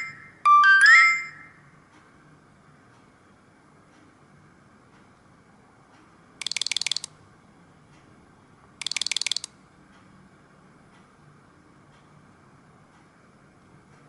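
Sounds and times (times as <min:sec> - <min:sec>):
ratchet-like clicking ringtone: 0:00.0 - 0:01.6, 0:06.4 - 0:07.1, 0:08.8 - 0:09.5.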